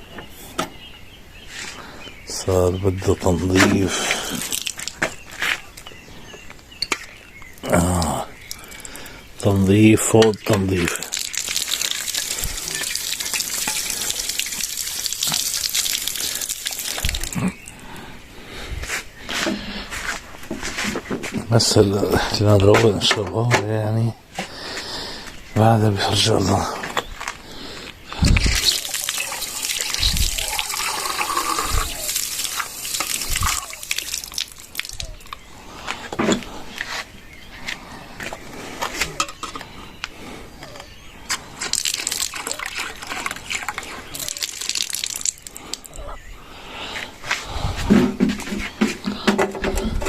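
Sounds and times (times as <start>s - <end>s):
water running and splashing: 3.6s - 5.2s, 7.6s - 17.8s, 28.2s - 35.4s, 41.6s - 46.0s
liquid sizzling on hot stove: 11.0s - 17.3s, 28.4s - 34.9s.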